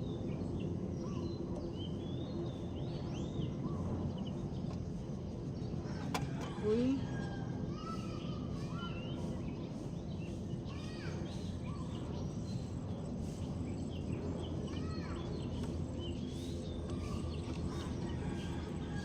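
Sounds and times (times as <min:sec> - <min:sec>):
small birds chirping: 0:00.0 - 0:07.0, 0:07.7 - 0:19.0
steady low rumble: 0:09.1 - 0:19.0.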